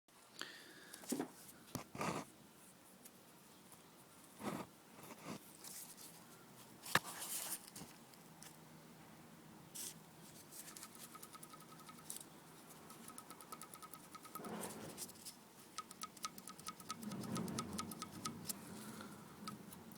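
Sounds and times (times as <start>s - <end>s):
engine ticking: 15.8s - 18.4s.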